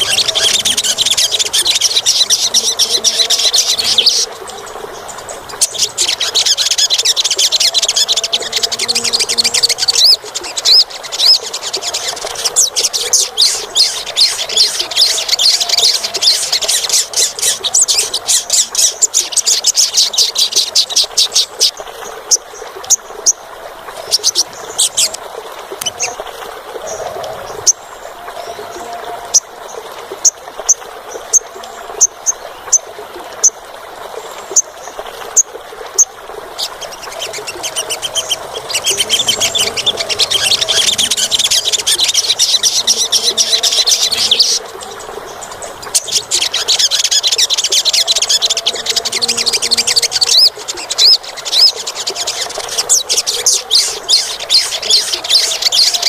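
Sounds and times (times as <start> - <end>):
bird chipping calls: 0.0 - 21.8, 35.3 - 56.0
bird trilling song: 0.0 - 21.8, 35.3 - 56.0.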